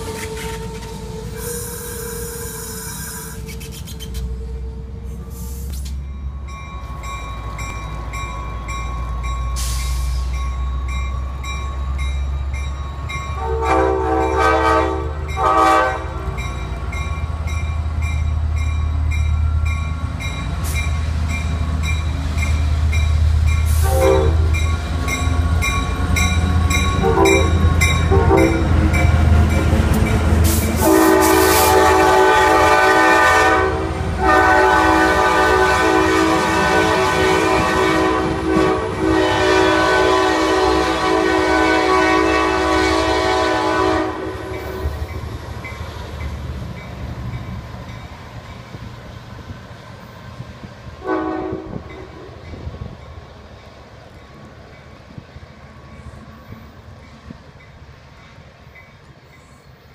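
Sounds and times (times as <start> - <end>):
locomotive air horn blasts: 0.0 - 3.6, 13.4 - 16.3, 23.7 - 24.6, 26.9 - 29.0, 30.4 - 44.6, 51.0 - 52.2
locomotive rumbling: 0.0 - 59.9.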